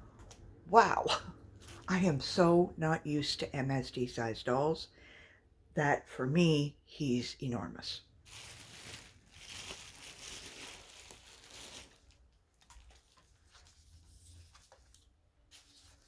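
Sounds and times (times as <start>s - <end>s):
plastic wrapping crinkling: 8.2s - 16.0s.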